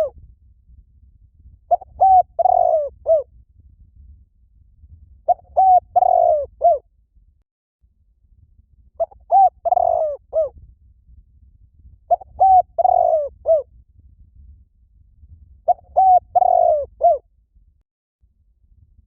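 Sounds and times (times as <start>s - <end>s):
dove cooing: 1.7s - 3.2s, 5.3s - 6.8s, 9.0s - 10.5s, 12.1s - 13.6s, 15.7s - 17.2s.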